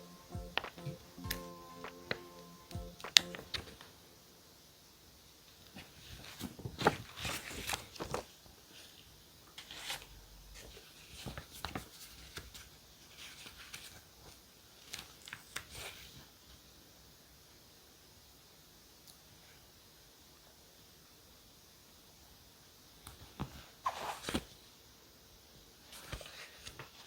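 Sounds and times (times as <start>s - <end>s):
paper rustling and crinkling: 5.7s - 16.3s, 23.9s - 24.6s.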